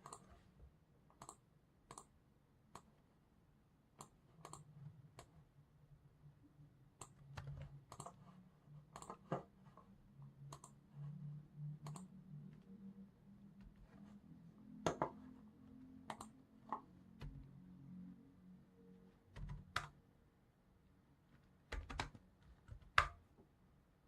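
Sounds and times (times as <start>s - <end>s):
computer keyboard keystrokes: 0.0s - 0.3s, 4.0s - 5.3s, 7.0s - 8.2s, 11.8s - 12.1s, 16.1s - 17.5s, 19.3s - 20.0s, 21.7s - 23.2s
mouse clicks: 0.0s - 0.3s, 1.2s - 2.1s, 4.0s - 5.3s, 8.9s - 9.5s, 10.5s - 10.8s, 11.8s - 12.6s, 16.1s - 17.5s.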